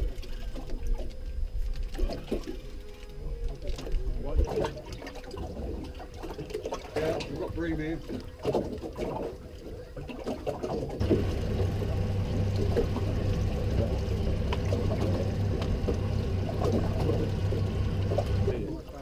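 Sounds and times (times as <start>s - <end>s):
water splashing and trickling: 0.0s - 19.0s
steady low hum: 11.0s - 19.0s.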